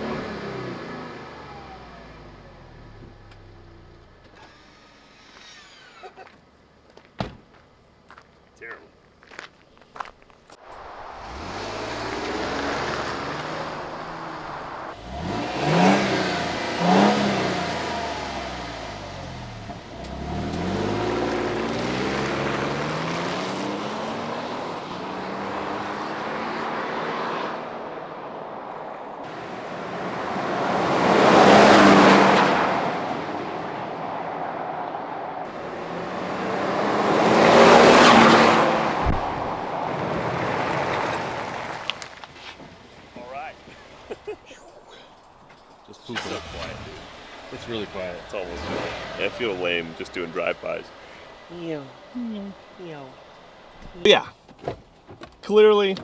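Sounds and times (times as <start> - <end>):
truck engine accelerating: 0.0 - 6.1, 10.6 - 54.2
truck driving past: 10.6 - 27.7, 29.2 - 42.2, 43.3 - 53.8.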